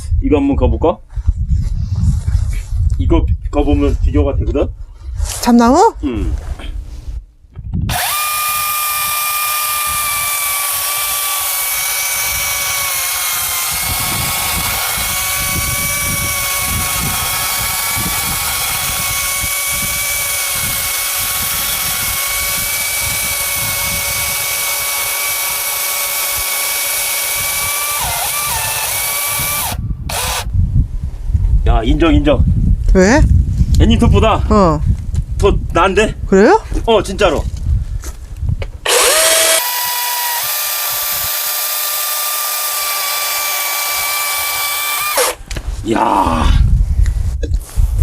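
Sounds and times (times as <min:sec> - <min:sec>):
electric chainsaw cutting wood: 0:07.9 - 0:30.5, 0:38.8 - 0:45.4.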